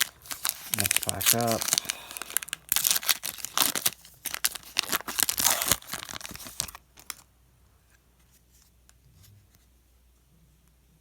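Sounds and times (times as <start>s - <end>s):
wrapper tearing and crinkling: 0.0s - 7.2s.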